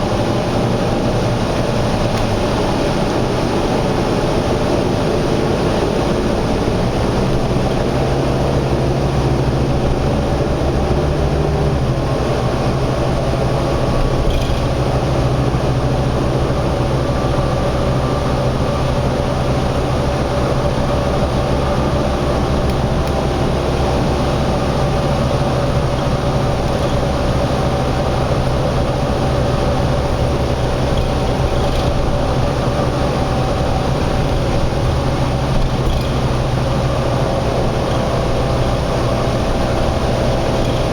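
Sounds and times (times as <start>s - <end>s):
vehicle low rumble: 0.0s - 40.9s.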